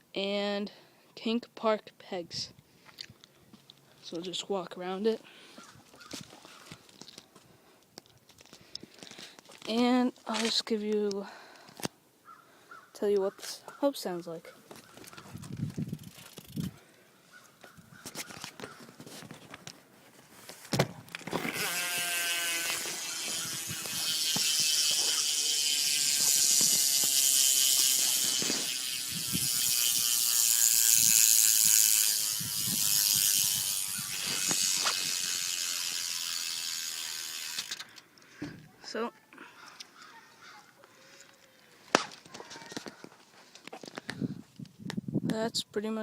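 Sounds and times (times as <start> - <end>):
bicycle freewheel hub ticking: 15.0 - 16.8, 21.4 - 38.0.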